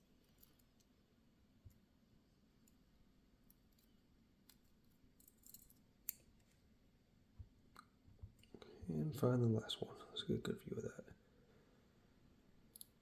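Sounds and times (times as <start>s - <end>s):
small clicks of lock parts: 0.2s - 1.0s, 2.6s - 6.6s, 12.7s - 13.0s.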